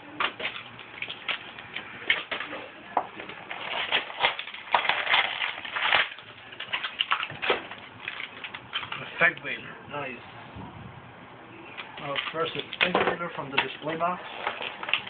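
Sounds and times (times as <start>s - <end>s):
foil wrappers crinkling and tearing: 3.3s - 9.3s, 12.0s - 15.0s.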